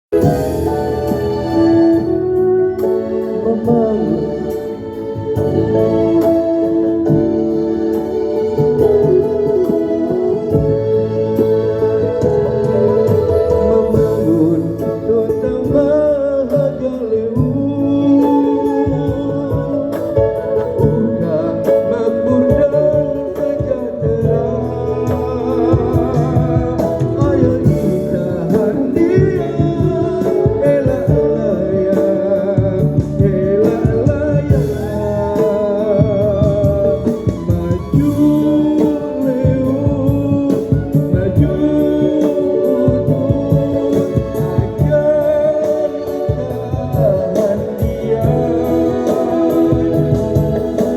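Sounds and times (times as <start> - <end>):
song with singing and beat: 0.1 - 50.9.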